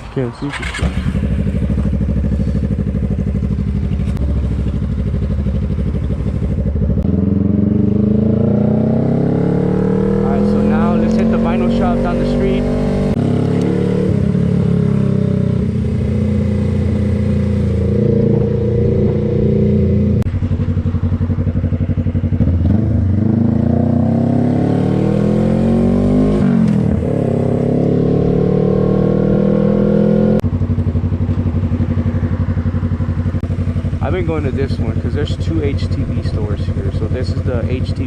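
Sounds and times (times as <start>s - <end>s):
motorcycle engine running: 0.5s - 38.0s.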